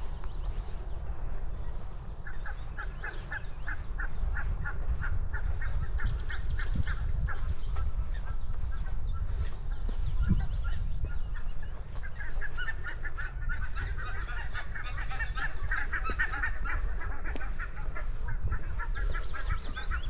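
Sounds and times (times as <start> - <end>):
geese honking: 1.9 - 20.0.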